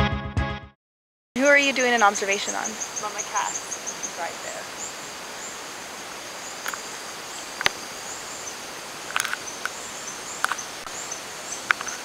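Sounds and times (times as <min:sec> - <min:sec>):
continuous high whine: 0:01.4 - 0:12.0
insect chorus chirping: 0:01.4 - 0:12.0
sharp clicks or snaps: 0:06.6 - 0:06.8, 0:07.6 - 0:07.8, 0:09.1 - 0:09.8.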